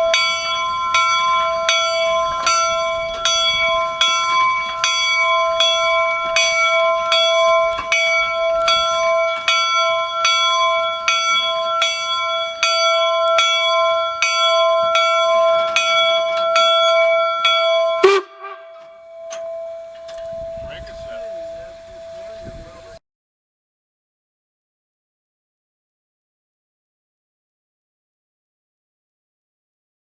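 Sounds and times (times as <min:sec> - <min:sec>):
locomotive bell ringing: 0:00.0 - 0:23.0.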